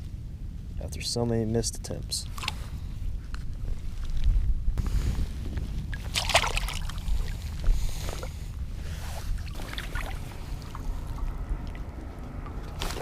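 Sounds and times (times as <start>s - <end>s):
wind rumble on microphone: 0.0s - 13.0s
water splashing: 5.9s - 7.6s, 9.3s - 13.0s.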